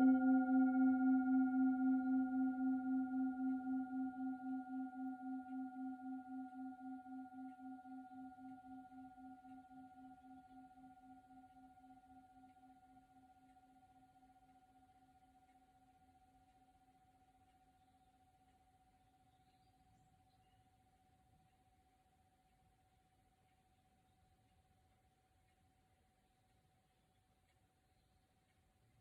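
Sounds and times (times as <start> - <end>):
singing bowl ringing: 0.0 - 13.4.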